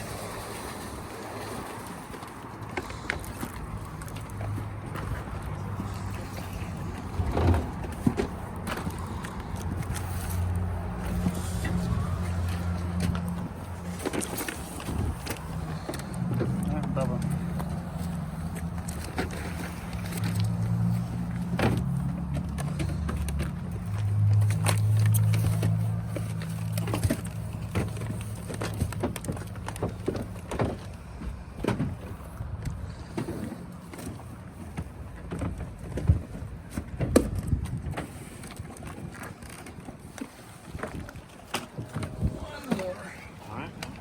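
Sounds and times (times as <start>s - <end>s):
vehicle engine humming: 0.0s - 38.5s.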